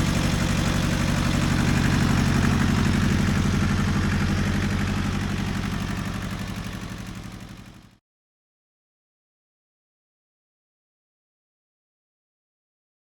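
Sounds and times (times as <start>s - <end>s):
tractor engine idling: 0.0s - 8.0s.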